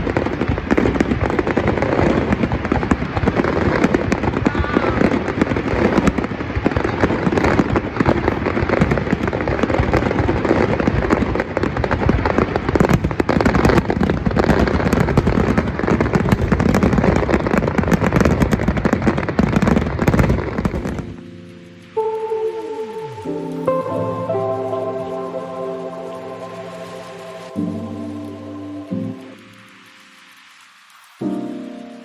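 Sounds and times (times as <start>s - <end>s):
fireworks bangs: 0.0s - 32.0s
fireworks crackling and popping: 0.0s - 32.0s
music: 20.7s - 32.0s.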